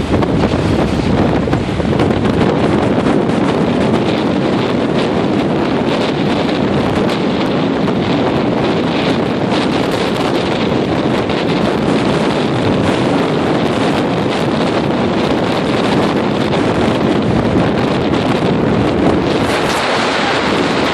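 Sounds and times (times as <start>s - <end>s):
strong wind on microphone: 0.0s - 20.9s
waves surging: 18.2s - 20.9s.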